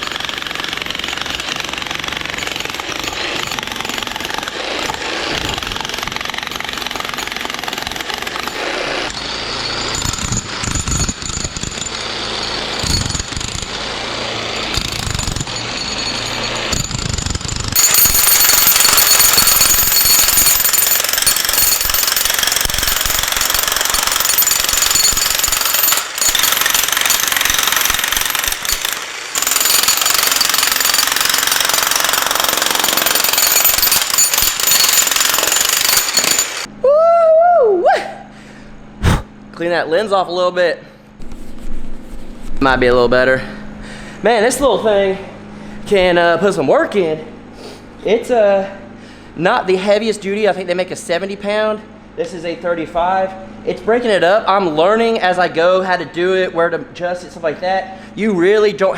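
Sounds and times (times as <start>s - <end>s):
demolition hammer breaking concrete: 0.0s - 36.7s.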